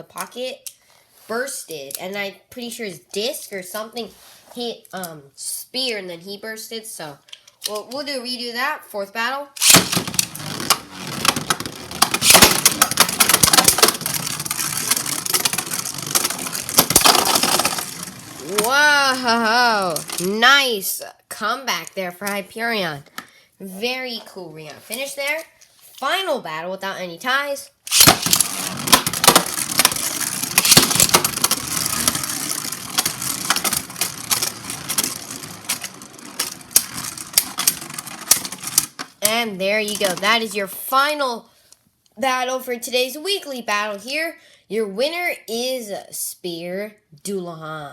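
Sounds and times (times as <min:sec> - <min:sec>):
spinning tops clacking together: 0:09.6 - 0:18.9, 0:27.9 - 0:39.0
spinning tops grinding: 0:09.6 - 0:20.4, 0:27.9 - 0:39.0.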